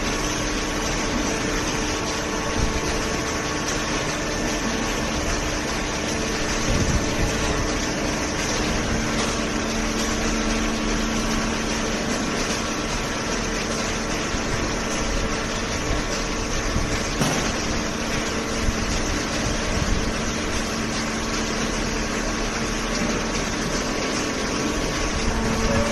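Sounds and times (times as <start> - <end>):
hydraulic baler machine hum: 0.0 - 25.9
machine tone: 24.2 - 25.9.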